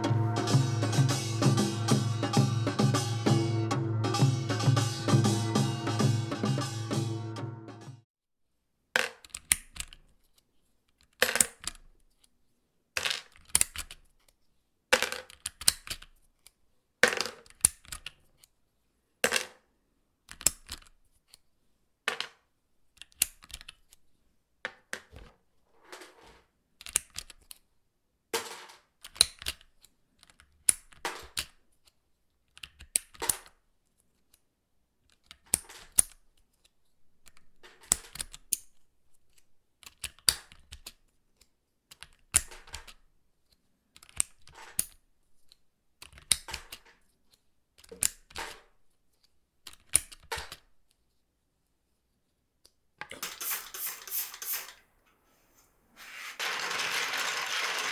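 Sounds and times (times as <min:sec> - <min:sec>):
plastic keyboard parts clicking: 0:32.5 - 0:33.6, 0:35.0 - 0:38.7, 0:39.3 - 0:43.1, 0:43.9 - 0:48.7.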